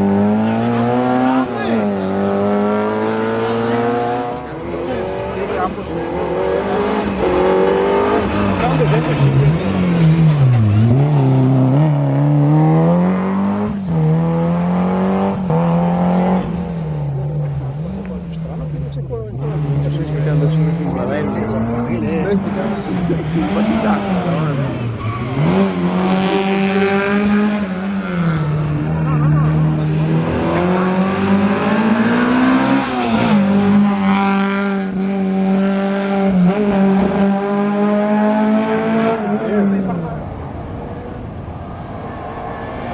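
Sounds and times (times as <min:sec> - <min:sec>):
rally car engine driven hard: 0:00.0 - 0:42.9.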